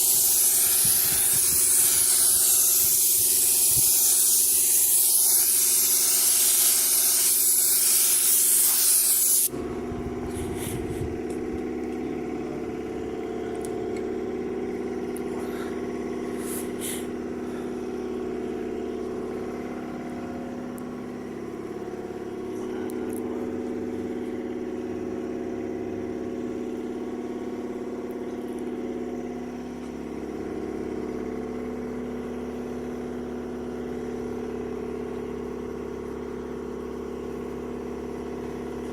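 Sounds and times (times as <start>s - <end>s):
paint spray gun hissing: 0.0s - 9.6s, 10.3s - 11.0s, 15.5s - 18.1s
air compressor humming: 0.0s - 38.9s.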